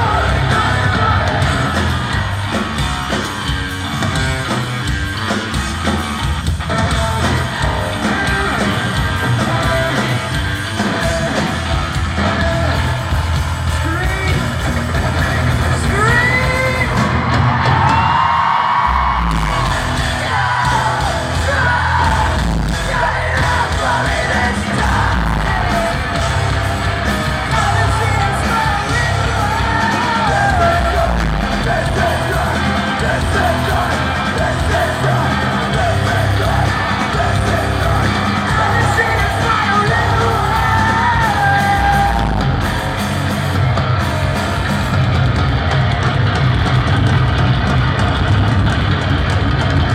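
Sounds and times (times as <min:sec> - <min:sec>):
person singing and yelling: 0:00.0 - 0:02.4, 0:06.8 - 0:17.3, 0:18.9 - 0:42.7
rock band playing live: 0:00.0 - 0:49.9.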